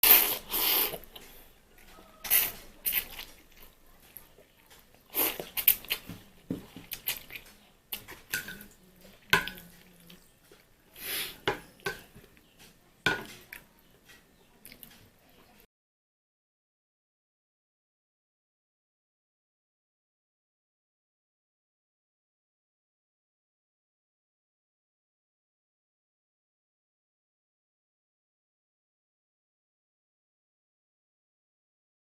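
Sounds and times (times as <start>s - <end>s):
dishes and utensils clinking: 5.5s - 10.7s, 11.4s - 15.1s.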